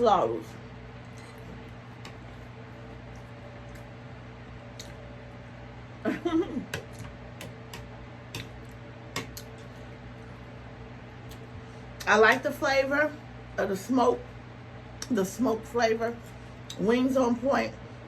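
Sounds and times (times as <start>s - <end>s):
electric fan humming: 0.0s - 18.0s
eating clicks and smacks: 4.7s - 5.0s.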